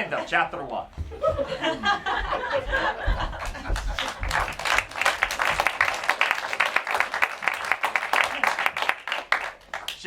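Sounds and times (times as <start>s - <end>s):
audience applauding: 3.3s - 10.0s.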